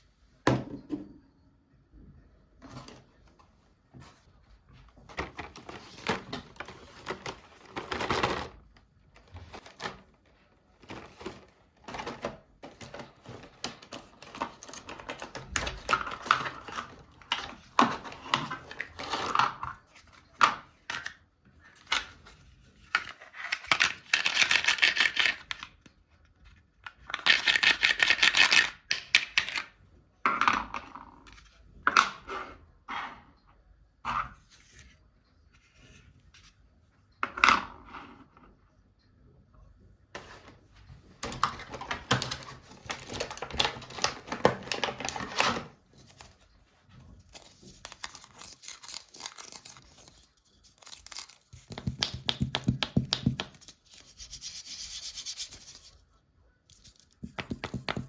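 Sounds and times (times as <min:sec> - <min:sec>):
plastic and cardboard rustling: 0:02.6 - 0:25.5, 0:40.2 - 0:56.1
packaging crinkling: 0:47.2 - 0:51.7
clicks and taps: 0:51.6 - 0:53.6, 0:57.2 - 0:58.0.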